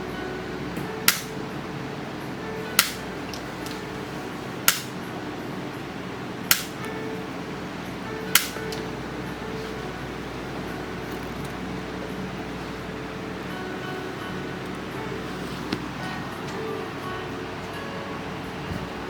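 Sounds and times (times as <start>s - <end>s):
background music: 0.0s - 19.0s
adjusting instrument clicks: 2.8s - 3.8s, 6.5s - 6.9s, 8.4s - 8.8s.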